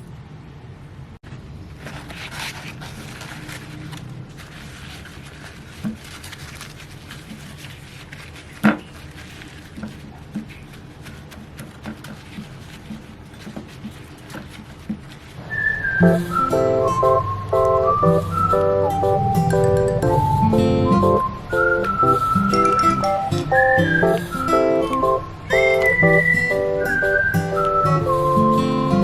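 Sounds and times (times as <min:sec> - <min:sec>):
light rustling: 0:01.7 - 0:15.5.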